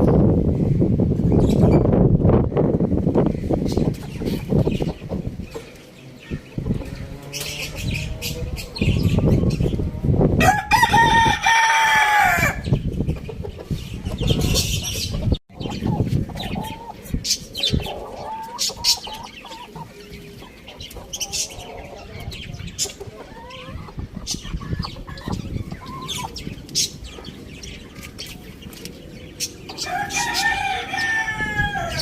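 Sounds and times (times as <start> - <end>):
hens clucking: 3.2 - 10.3, 12.2 - 32.0
rooster crowing: 10.4 - 12.6, 29.8 - 32.0.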